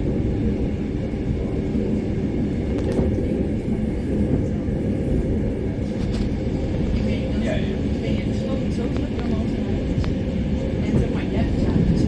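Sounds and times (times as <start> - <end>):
train rumbling on track: 0.0 - 12.0.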